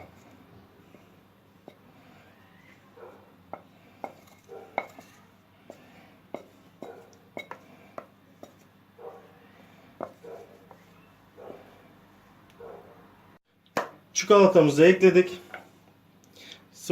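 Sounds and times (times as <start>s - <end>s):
spoon tapping and scraping bowl: 3.5s - 8.7s.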